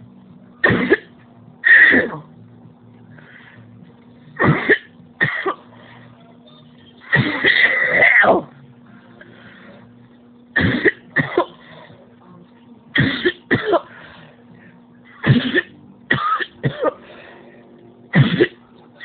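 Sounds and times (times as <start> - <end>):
person coughing: 0.6 - 2.3, 7.1 - 8.5, 10.6 - 11.6, 13.0 - 13.9, 15.2 - 17.1, 18.1 - 18.6.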